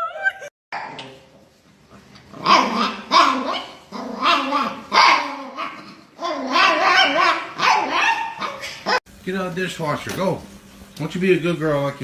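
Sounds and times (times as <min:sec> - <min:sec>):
dog barking and grumbling: 0:02.3 - 0:09.0.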